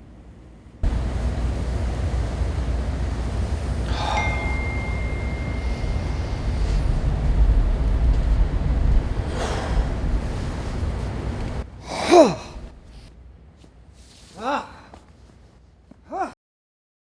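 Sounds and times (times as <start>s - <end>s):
low background rumble: 0.0s - 15.6s
person gasping: 3.9s - 7.0s, 9.3s - 10.4s, 11.8s - 13.0s, 14.3s - 15.1s, 16.1s - 16.4s.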